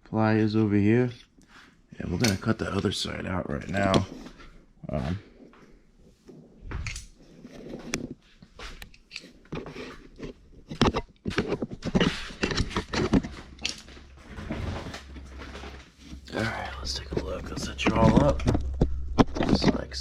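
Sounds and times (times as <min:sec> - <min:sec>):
hand tools clicking and clanking: 0:08.7 - 0:20.0.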